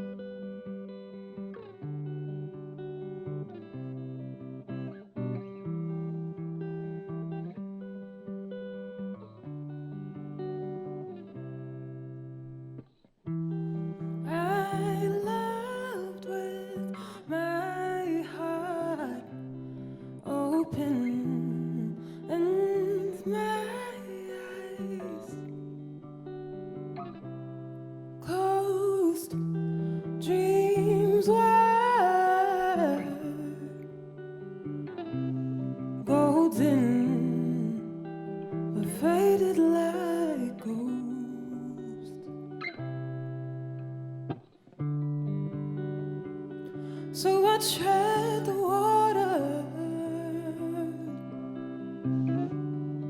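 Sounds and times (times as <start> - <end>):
guitar picked chords: 0.0 - 53.0
person singing: 14.2 - 25.8, 28.2 - 34.6, 35.6 - 42.5, 46.7 - 52.8.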